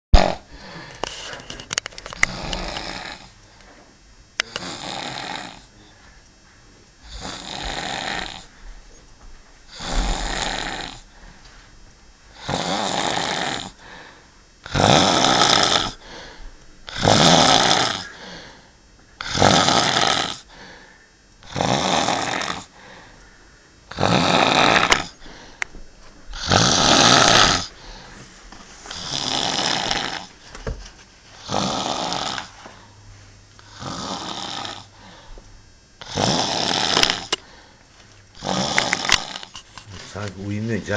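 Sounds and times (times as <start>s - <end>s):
person snoring loudly: 0.1s - 0.9s, 2.2s - 3.4s, 4.4s - 5.9s, 7.0s - 8.5s, 9.7s - 11.2s, 12.3s - 14.0s, 14.6s - 16.3s, 16.9s - 18.5s, 19.2s - 20.7s, 21.4s - 22.8s, 23.9s - 25.6s, 26.3s - 28.2s, 28.9s - 30.3s, 31.4s - 32.6s, 33.6s - 35.2s, 36.0s - 37.6s, 38.4s - 40.9s.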